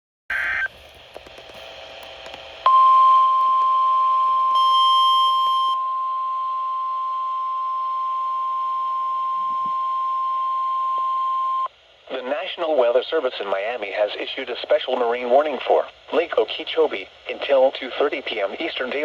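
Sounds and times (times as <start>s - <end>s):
steady warning alarm tone: 2.6s - 7.6s
higher beep: 2.7s - 7.3s
low radio hiss: 11.7s - 19.0s.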